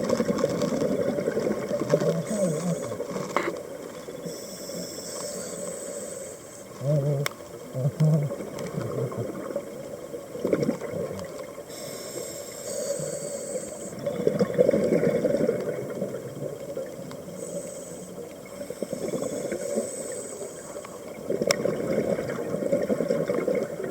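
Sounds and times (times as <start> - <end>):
regulator hiss on inhale: 4.2 - 6.8, 11.6 - 14.0, 17.3 - 21.1
exhaled bubbles rushing: 13.9 - 17.0, 21.1 - 23.9.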